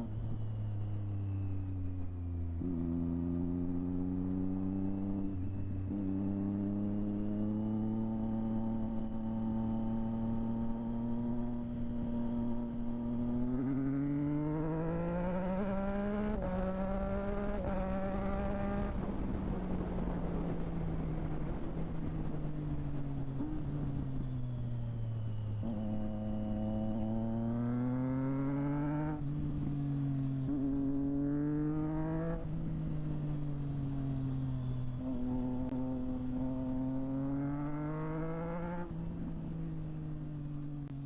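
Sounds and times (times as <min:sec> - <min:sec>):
motorcycle engine revving: 0:02.5 - 0:20.6, 0:25.4 - 0:41.0.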